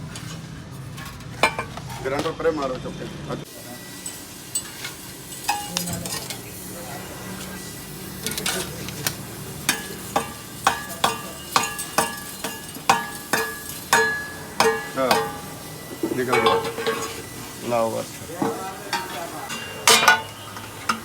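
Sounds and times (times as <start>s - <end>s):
metal strikes on steel shell: 9.7s - 17.2s, 18.5s - 20.5s.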